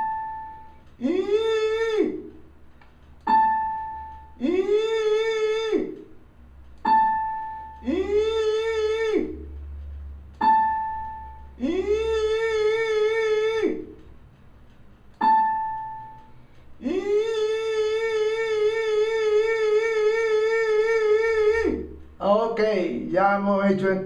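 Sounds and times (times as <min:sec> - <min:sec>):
electronic keyboard short tones: 0:03.3 - 0:04.4, 0:06.9 - 0:07.8.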